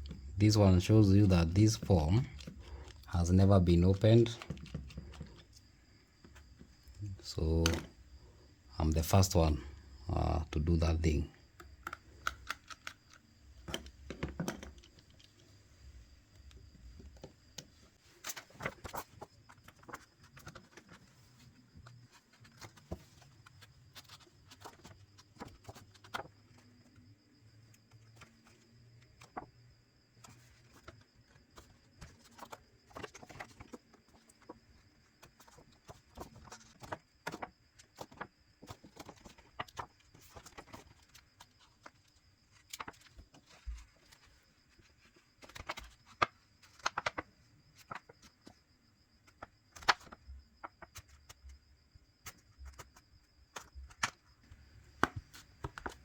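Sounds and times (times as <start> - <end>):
small tools clicking and tapping: 11.6 - 15.4.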